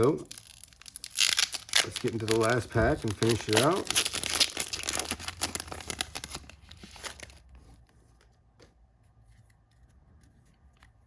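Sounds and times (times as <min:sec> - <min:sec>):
wrapper tearing and crinkling: 0:00.0 - 0:07.4.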